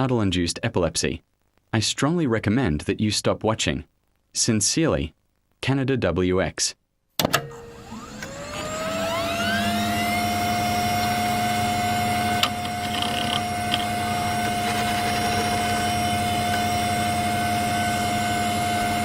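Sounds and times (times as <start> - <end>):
machine whine: 7.4 - 19.0
low hum: 9.1 - 19.0.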